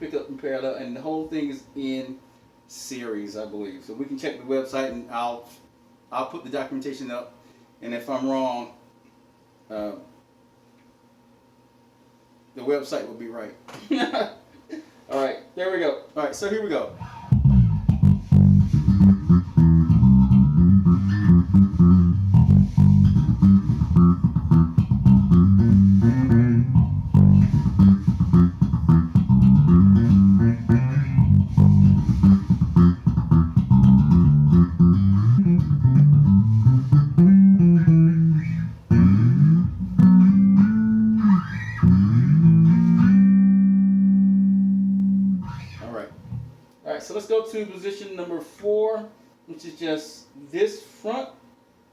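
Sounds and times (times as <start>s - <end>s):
electric bass playing low notes: 17.0s - 46.6s.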